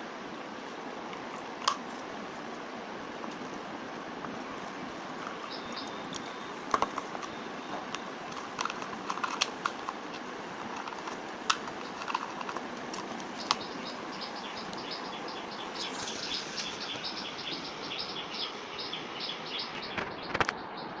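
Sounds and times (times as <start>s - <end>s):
steady hiss: 0.0s - 21.0s
small birds chirping: 4.3s - 21.0s.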